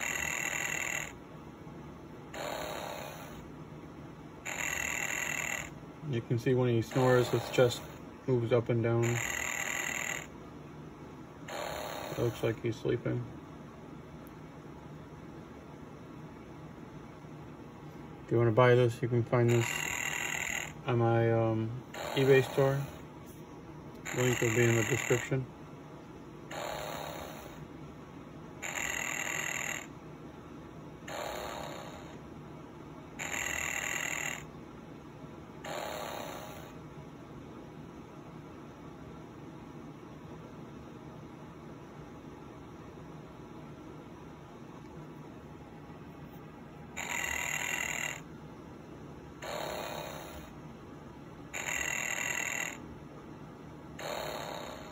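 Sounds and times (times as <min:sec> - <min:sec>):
toy playing recorded snore: 0:00.0 - 0:01.2, 0:02.3 - 0:03.5, 0:04.4 - 0:05.8, 0:06.9 - 0:08.0, 0:09.0 - 0:10.3, 0:11.5 - 0:12.4, 0:19.5 - 0:21.1, 0:21.9 - 0:23.0, 0:24.0 - 0:25.4, 0:26.5 - 0:27.6, 0:28.6 - 0:29.9, 0:31.1 - 0:32.2, 0:33.2 - 0:34.5, 0:35.6 - 0:36.8, 0:47.0 - 0:48.2, 0:49.4 - 0:50.6, 0:51.5 - 0:52.8, 0:54.0 - 0:54.9.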